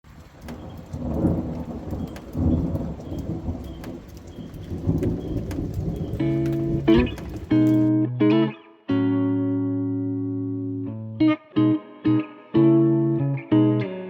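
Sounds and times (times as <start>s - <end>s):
rain: 0.0s - 7.9s
thunder rumbling: 0.0s - 7.9s
plucked guitar note: 6.3s - 14.0s.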